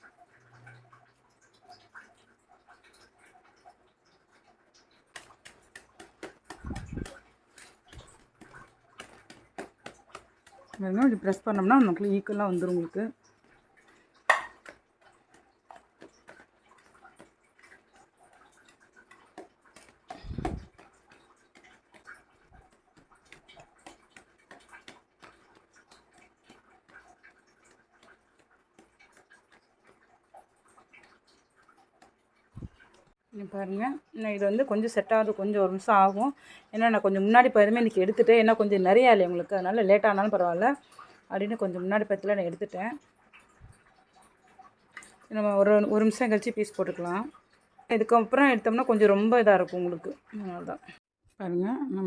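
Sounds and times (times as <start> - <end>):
utensil clicking and tapping: 5.0 - 33.1
spoon tapping on a plate: 14.3 - 14.8.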